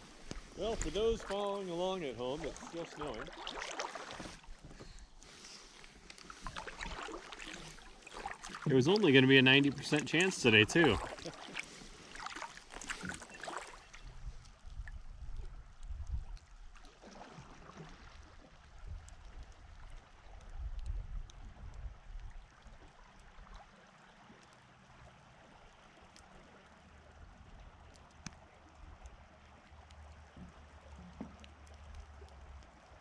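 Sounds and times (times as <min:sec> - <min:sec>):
paddle splashes: 0:00.0 - 0:20.5
trickling water: 0:00.0 - 0:33.0.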